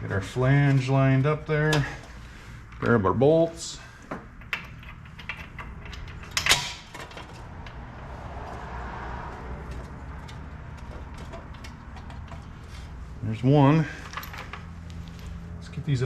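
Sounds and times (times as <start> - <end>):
bolt scraping: 4.0 - 7.8
metal bolts clicking and clinking: 4.1 - 7.8, 9.7 - 12.9, 13.9 - 15.0.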